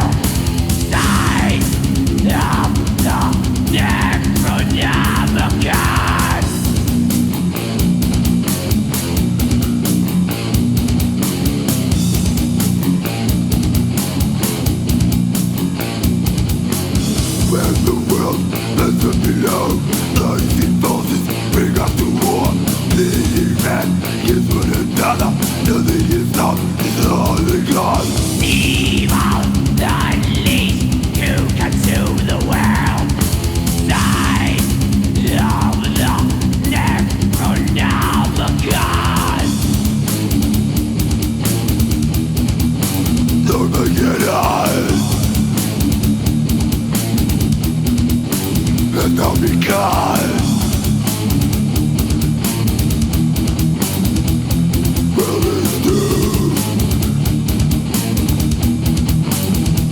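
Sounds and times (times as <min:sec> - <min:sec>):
fast drumming: 0:00.0 - 0:59.9
heavily distorted guitars: 0:00.0 - 0:59.9.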